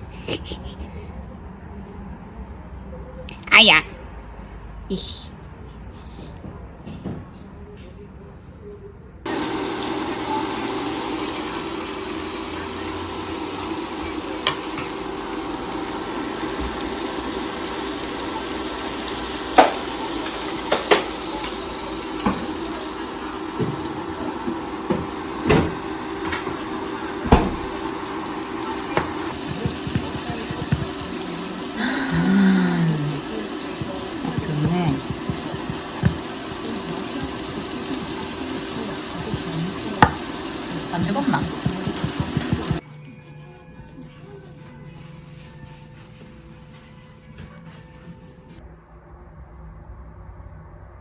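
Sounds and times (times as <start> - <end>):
running water rushing: 9.3 - 42.8.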